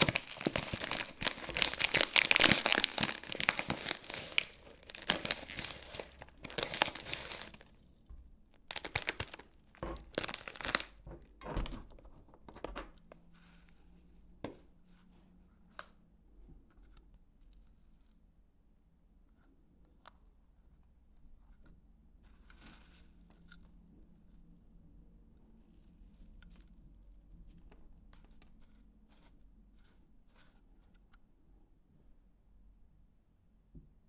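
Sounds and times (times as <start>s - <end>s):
packaging tearing and crinkling: 0.0s - 7.7s, 8.6s - 11.0s
crackles and taps: 0.0s - 11.6s.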